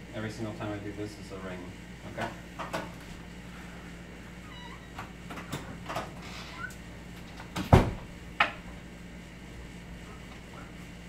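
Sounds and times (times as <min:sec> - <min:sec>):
door shutting with a thud: 0:07.5 - 0:08.2.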